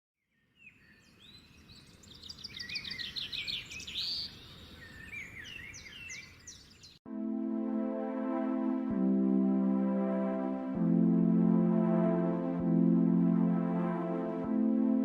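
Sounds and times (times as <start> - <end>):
birds chirping and singing: 0.3 - 7.0.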